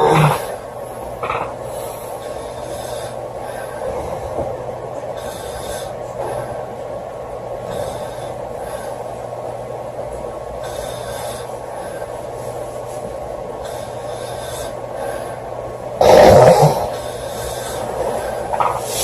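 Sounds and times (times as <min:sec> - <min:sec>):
girl snoring: 0:00.0 - 0:00.6, 0:16.0 - 0:19.0
steady background hum: 0:00.0 - 0:19.0.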